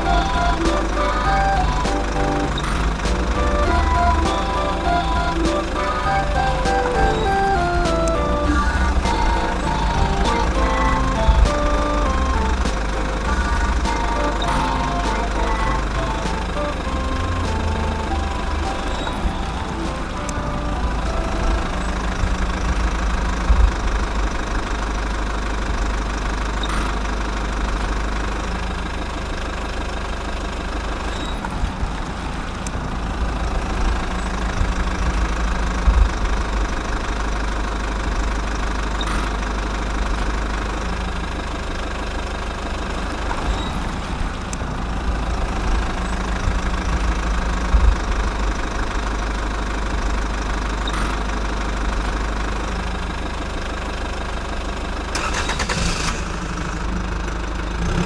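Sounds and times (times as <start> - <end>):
engine idling rumble: 0.0 - 58.0.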